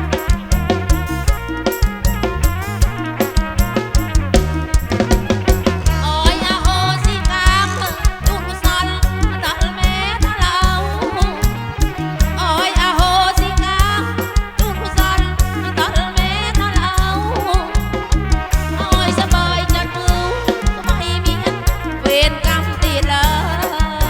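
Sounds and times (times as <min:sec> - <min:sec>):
drum beat: 0:00.0 - 0:24.0.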